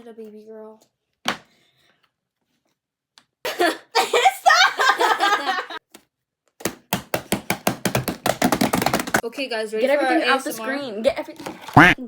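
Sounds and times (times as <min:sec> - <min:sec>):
person laughing: 0:03.5 - 0:05.8.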